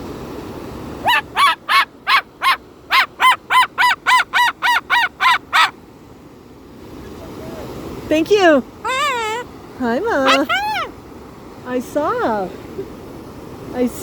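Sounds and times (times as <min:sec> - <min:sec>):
cockatoo barking harsh calls: 0:01.0 - 0:05.8, 0:08.9 - 0:09.4, 0:10.2 - 0:10.9.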